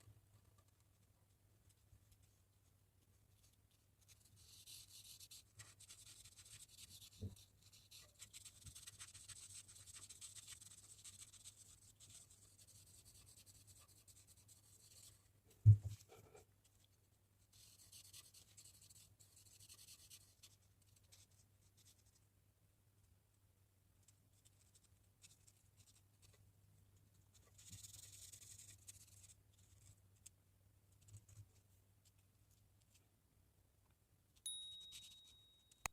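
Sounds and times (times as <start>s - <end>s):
pen scratching on paper: 4.1s - 15.2s, 27.6s - 29.8s
knock on table: 15.6s - 15.9s.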